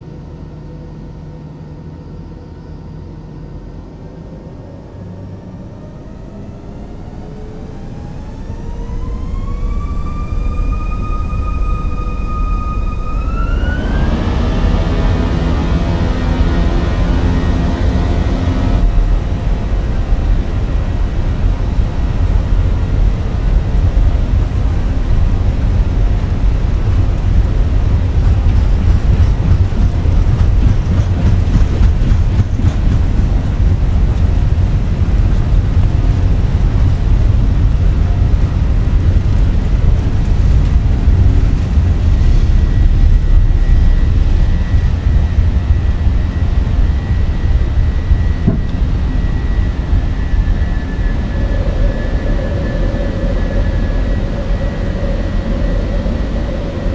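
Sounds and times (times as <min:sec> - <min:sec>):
jet engines rumbling: 0:00.0 - 0:56.9
high thin whine: 0:09.9 - 0:56.9.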